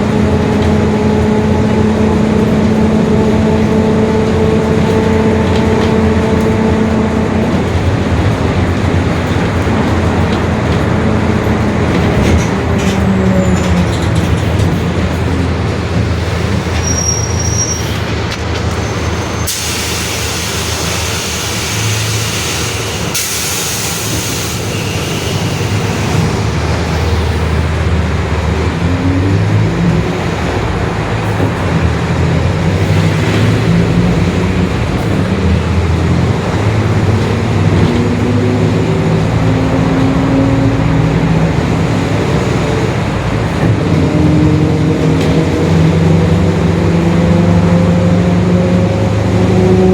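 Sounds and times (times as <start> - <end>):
bus engine drone: 0.0 - 49.9
compressed air hiss: 19.5 - 25.8.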